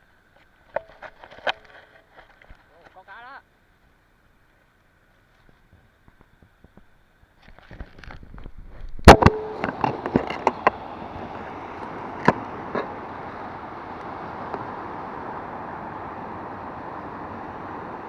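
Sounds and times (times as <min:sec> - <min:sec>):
surf: 0:08.8 - 0:18.0.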